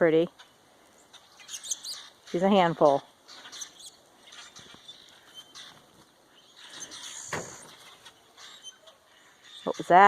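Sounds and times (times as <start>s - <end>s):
faint birds chirping: 0.0s - 10.0s
thump of snow landing: 7.3s - 7.7s.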